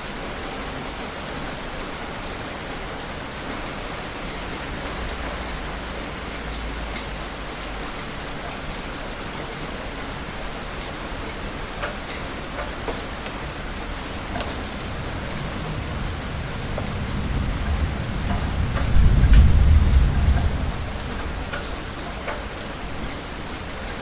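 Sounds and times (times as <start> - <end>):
heavy rain falling: 0.0 - 24.0
low rumble of thunder: 13.4 - 23.3.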